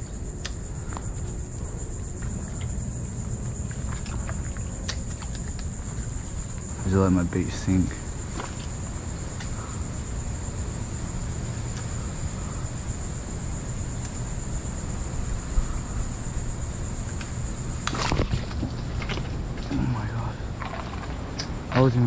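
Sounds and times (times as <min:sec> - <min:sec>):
insects droning: 0:00.0 - 0:22.0.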